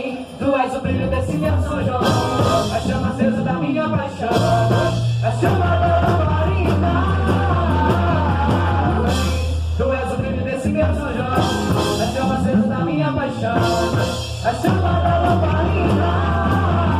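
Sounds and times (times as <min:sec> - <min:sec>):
person singing over a beat: 0:00.8 - 0:09.4
heavy bass line: 0:00.8 - 0:16.9.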